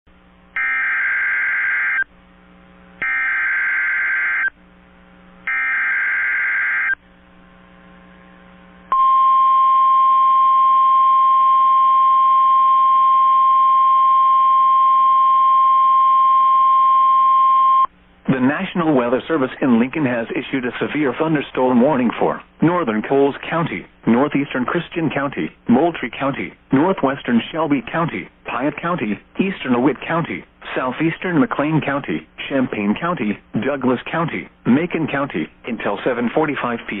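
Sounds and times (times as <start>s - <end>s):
steady warning alarm tone: 0.6s - 2.1s, 3.0s - 4.5s, 5.5s - 7.0s.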